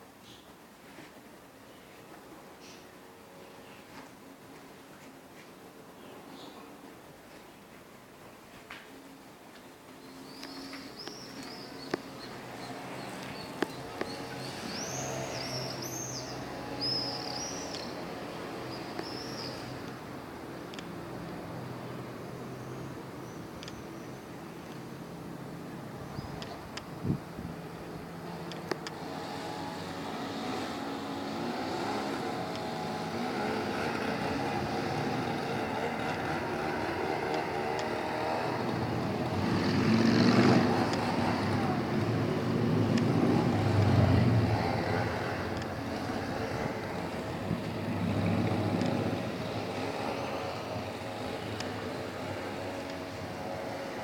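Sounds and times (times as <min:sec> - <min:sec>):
small birds chirping: 0:09.9 - 0:20.0, 0:22.3 - 0:24.9
motor vehicle engine approaching: 0:10.3 - 0:22.8, 0:24.9 - 0:54.0.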